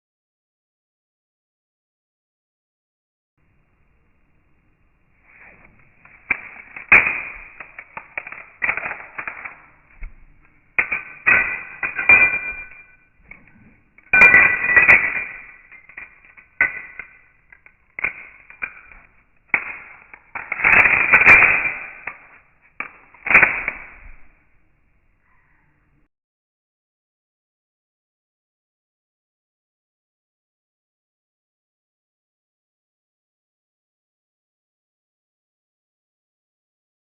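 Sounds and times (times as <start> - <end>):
pistol slide scraping: 5.2 - 24.3
pistol parts clicking and clacking: 6.2 - 24.4.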